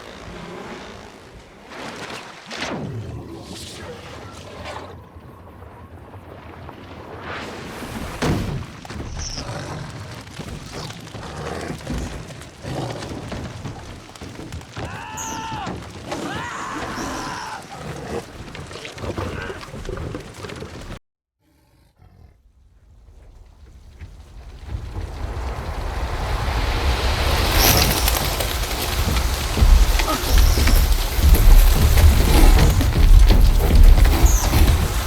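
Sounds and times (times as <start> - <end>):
thuds and knocks: 28.0 - 35.0.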